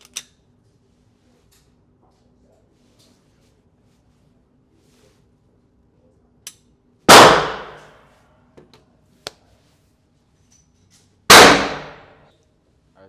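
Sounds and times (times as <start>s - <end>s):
loud pistol shot: 7.1s - 7.9s, 11.3s - 12.1s.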